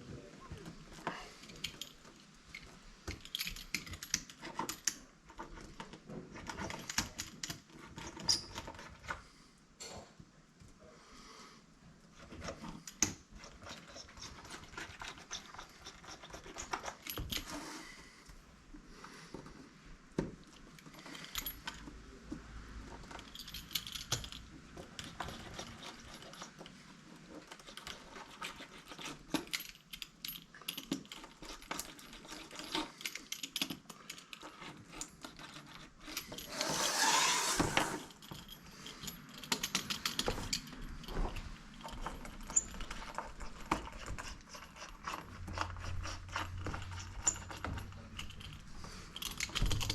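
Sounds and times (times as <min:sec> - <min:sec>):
rustling scrape: 0:34.5 - 0:39.1.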